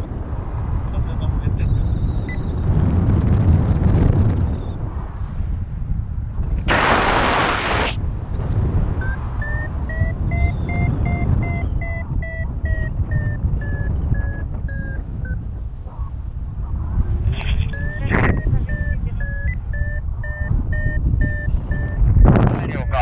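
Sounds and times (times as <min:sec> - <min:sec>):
wind on microphone: 0:00.0 - 0:23.0
variometer short beeps: 0:08.3 - 0:15.5, 0:17.4 - 0:23.0.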